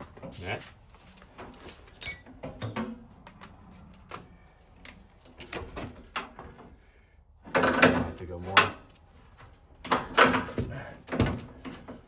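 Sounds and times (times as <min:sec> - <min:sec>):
hand tools clicking on metal: 0:01.6 - 0:02.4
ringing metallic clink: 0:02.0 - 0:02.6.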